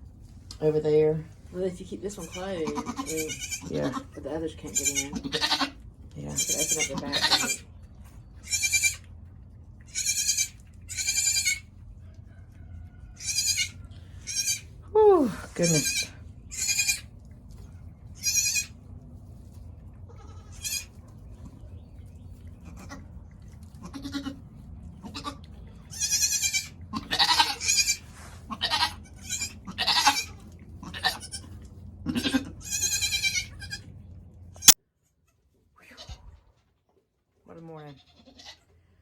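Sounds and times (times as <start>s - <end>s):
goat kids bleating: 2.1s - 7.8s, 8.4s - 9.0s, 9.9s - 11.7s, 13.2s - 14.8s, 15.5s - 17.1s, 18.2s - 18.8s, 20.1s - 21.0s, 22.6s - 23.1s, 23.8s - 24.4s, 25.0s - 33.9s, 34.6s - 36.4s, 37.8s - 38.8s.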